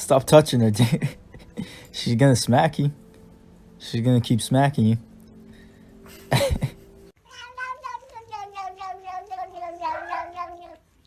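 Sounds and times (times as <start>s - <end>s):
cat yowling: 9.6s - 10.8s.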